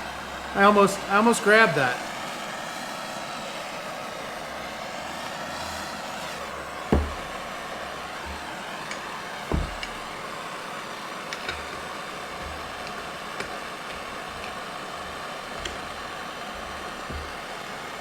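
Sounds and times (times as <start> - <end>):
parts and tools clunking: 5.6 - 10.4, 11.3 - 18.0.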